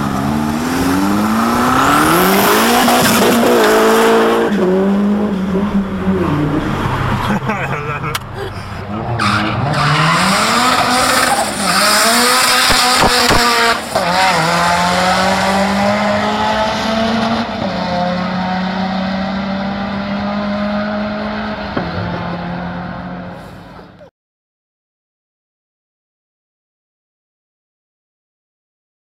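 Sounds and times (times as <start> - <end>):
car engine revving hard: 0.0 - 8.2, 8.9 - 23.5.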